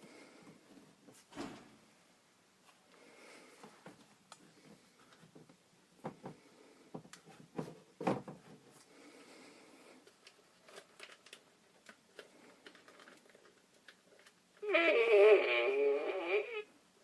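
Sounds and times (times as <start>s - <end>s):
objects being handled: 10.0s - 14.6s.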